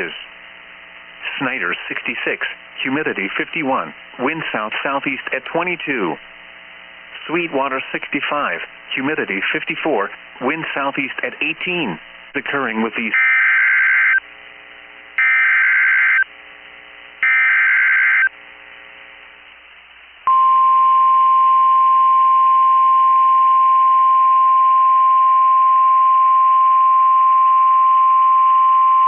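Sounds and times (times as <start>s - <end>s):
buzzy digital header bursts: 15.2s - 16.2s, 17.2s - 18.3s.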